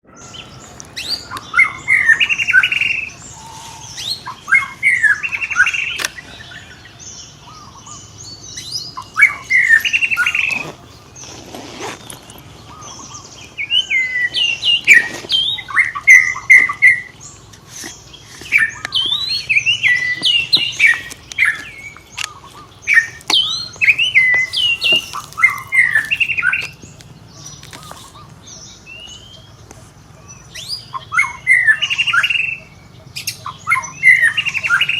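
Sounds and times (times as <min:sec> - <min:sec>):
high-pitched animal chirping: 0:22.2 - 0:26.8.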